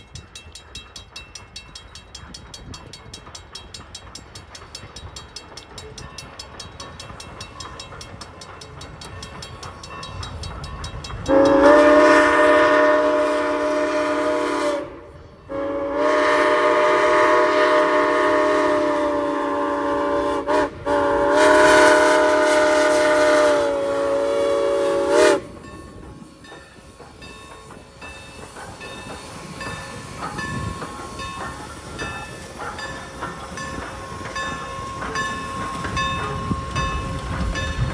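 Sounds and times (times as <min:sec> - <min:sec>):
steam locomotive running: 0:00.0 - 0:37.9
steam whistle blasts: 0:11.3 - 0:25.8.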